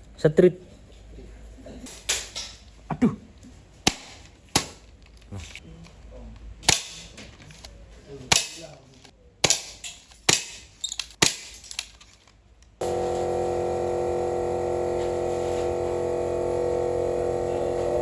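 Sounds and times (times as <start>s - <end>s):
steady tonal hum: 12.8s - 18.0s.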